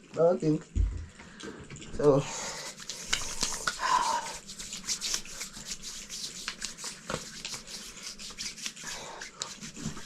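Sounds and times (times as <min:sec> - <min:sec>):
hands rubbing oil on skin: 0:02.5 - 0:10.0.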